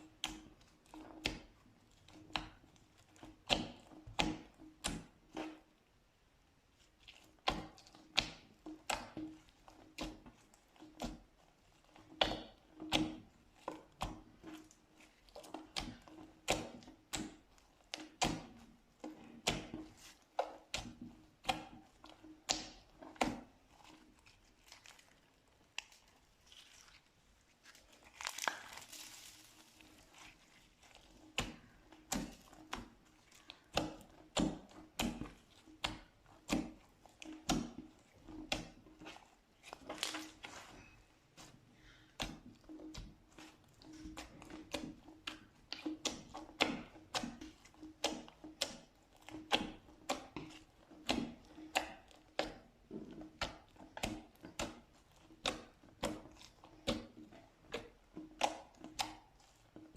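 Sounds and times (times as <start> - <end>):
slime popping and crackling: 27.6 - 37.7, 38.4 - 41.0.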